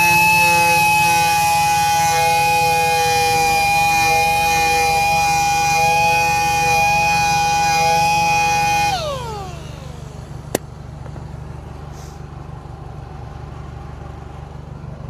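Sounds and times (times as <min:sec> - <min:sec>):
power sander whining down: 0:00.0 - 0:10.6.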